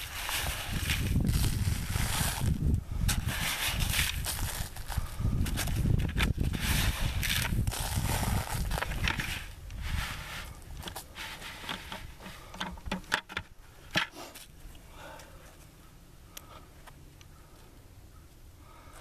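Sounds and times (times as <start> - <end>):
tools scraping soil: 0.0 - 14.5.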